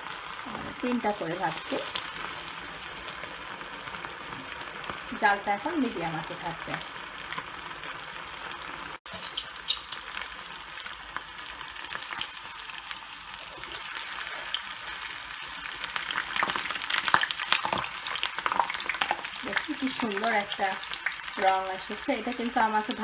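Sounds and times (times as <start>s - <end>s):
chicken deep-frying in oil: 0.0s - 23.0s.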